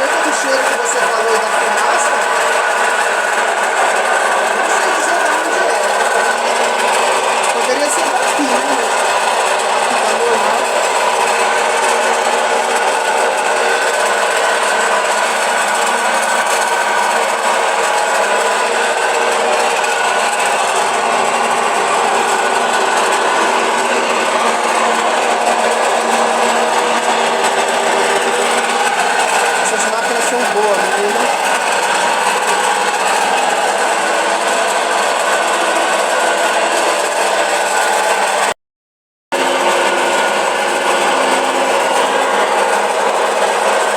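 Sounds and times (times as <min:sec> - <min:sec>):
washing machine spinning: 0:00.0 - 0:38.6, 0:39.3 - 0:43.9.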